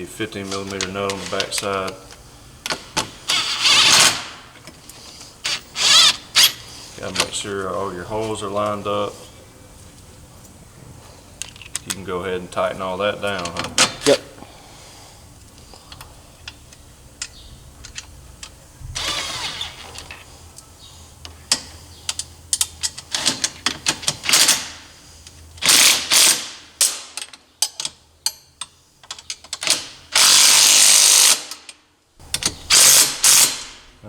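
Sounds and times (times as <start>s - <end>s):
ratchet clicking: 25.6s - 31.7s, 32.3s - 33.8s.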